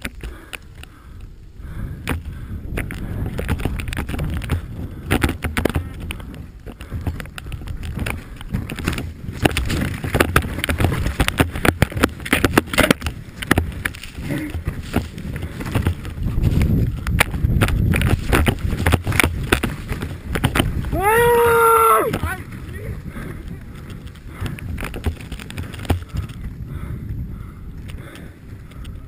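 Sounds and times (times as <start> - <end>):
wind buffeting microphone: 0.0 - 29.0
snowmobile engine rumble: 1.2 - 29.0
sharp knocks and crackles: 2.0 - 21.1, 23.4 - 26.6.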